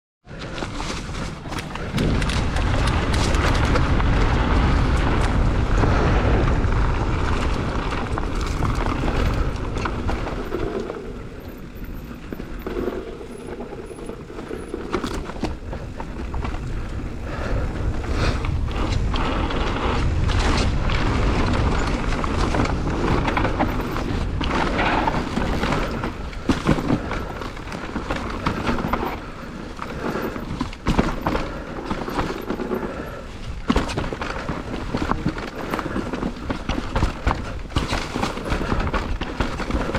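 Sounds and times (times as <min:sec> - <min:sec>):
wind buffeting microphone: 0:00.3 - 0:39.9
knocks and rattles: 0:20.2 - 0:39.9.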